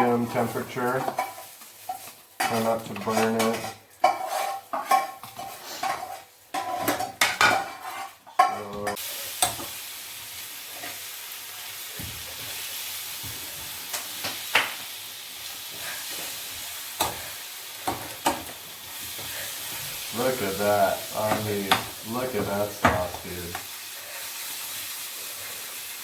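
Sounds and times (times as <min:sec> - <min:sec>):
utensil scraping a pan: 0:00.0 - 0:09.0
food sizzling in a skillet: 0:00.0 - 0:26.0.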